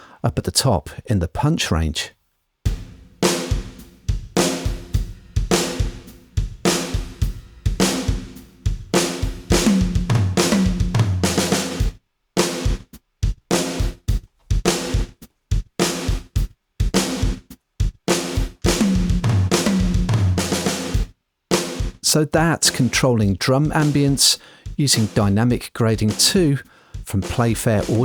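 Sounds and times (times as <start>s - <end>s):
falling tom fill: 2.7s - 11.9s, 18.7s - 20.8s, 27.0s - 28.0s
acoustic drum kit groove: 2.7s - 28.0s.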